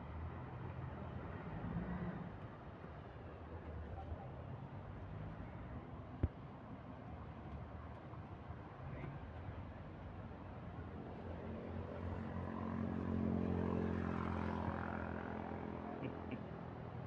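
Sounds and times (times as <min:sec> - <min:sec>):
engine passing by: 0:11.0 - 0:16.8.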